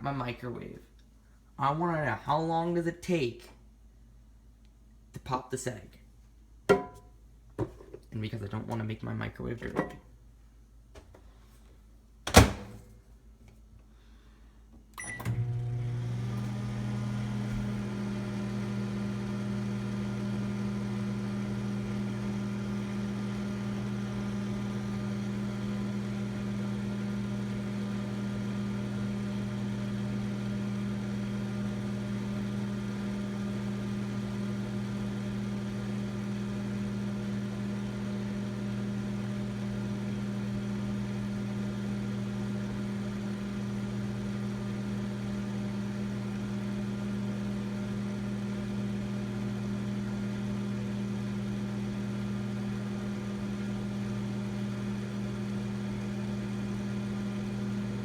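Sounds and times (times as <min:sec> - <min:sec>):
microwave oven humming: 0:14.2 - 0:58.0.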